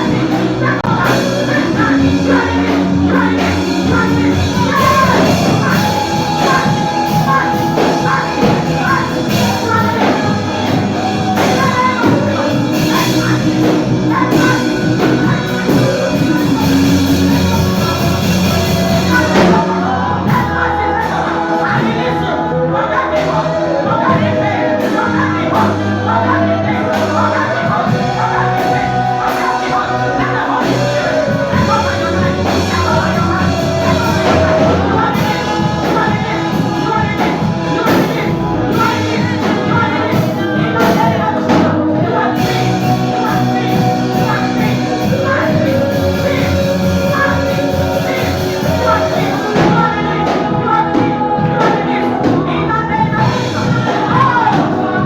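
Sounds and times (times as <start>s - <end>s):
full band with drums: 0.0s - 55.0s
person singing: 0.0s - 55.0s.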